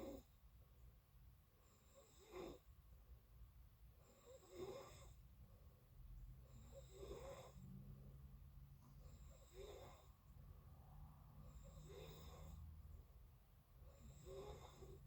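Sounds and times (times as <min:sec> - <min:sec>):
person snoring faintly: 0:06.5 - 0:07.7, 0:09.0 - 0:10.1, 0:11.4 - 0:12.8, 0:13.9 - 0:15.0.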